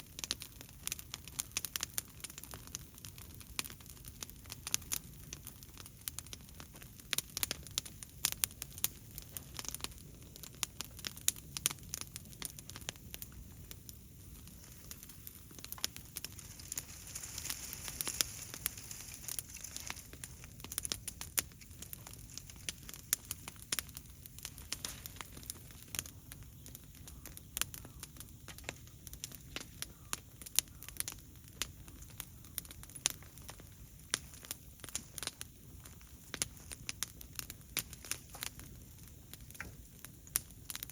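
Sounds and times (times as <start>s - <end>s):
fire crackling with pops: 0.0s - 40.9s
hiss: 16.2s - 20.1s.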